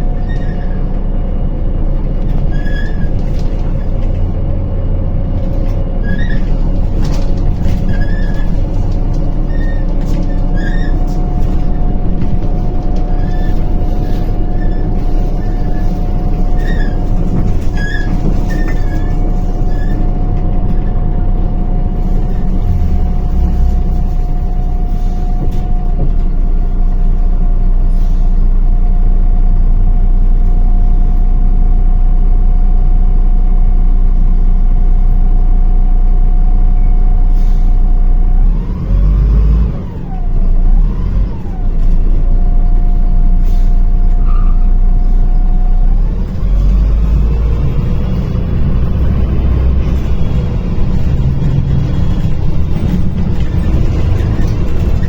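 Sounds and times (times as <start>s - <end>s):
constant whine: 0.0s - 27.9s
bus engine drone: 0.0s - 55.0s
air brakes hissing: 24.6s - 25.6s, 27.9s - 28.5s, 37.3s - 37.8s, 43.3s - 44.7s.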